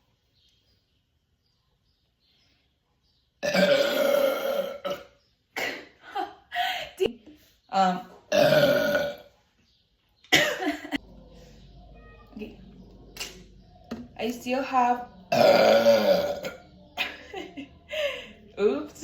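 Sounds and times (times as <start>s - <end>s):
person burping: 3.4s - 5.8s, 8.3s - 9.3s, 15.3s - 16.6s.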